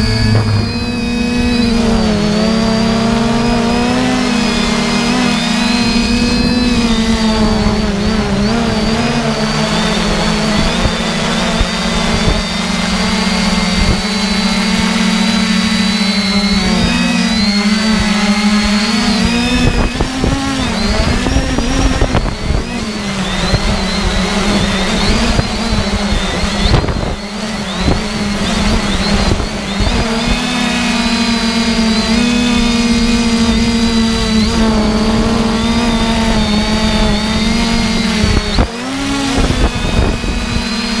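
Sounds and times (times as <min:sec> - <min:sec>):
low rumble of buffeting air: 0:00.0 - 0:03.4
drone propellers humming: 0:00.0 - 0:41.0.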